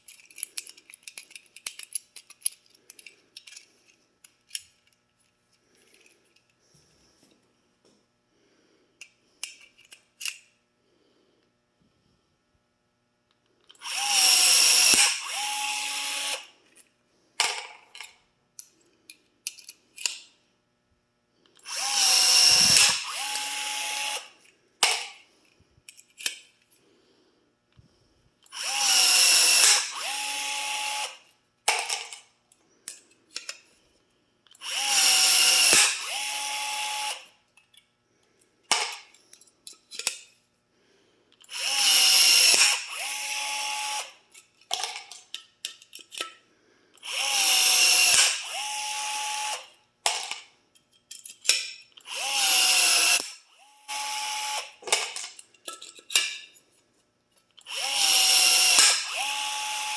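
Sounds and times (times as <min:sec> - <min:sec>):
rivet gun motor whir: 0:13.7 - 0:16.6, 0:21.6 - 0:24.5, 0:28.4 - 0:31.3, 0:34.5 - 0:37.3, 0:41.4 - 0:44.2, 0:47.0 - 0:49.8, 0:52.0 - 0:55.0, 0:57.6 - 0:59.9.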